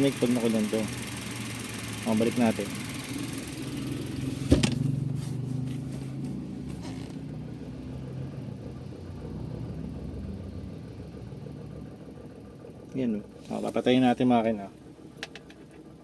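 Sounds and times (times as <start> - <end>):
minivan engine idling: 0.0 - 16.0
seat knocking down: 4.3 - 5.1.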